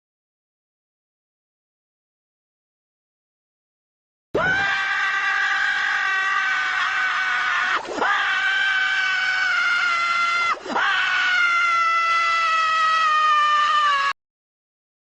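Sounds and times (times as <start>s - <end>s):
high-pitched scream: 4.4s - 14.2s.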